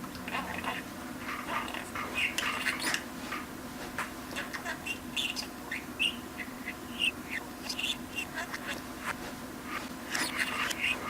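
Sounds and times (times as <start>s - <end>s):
steady low hum: 0.0s - 11.0s
budgerigar chattering: 1.4s - 3.0s, 4.3s - 8.8s, 10.1s - 11.0s.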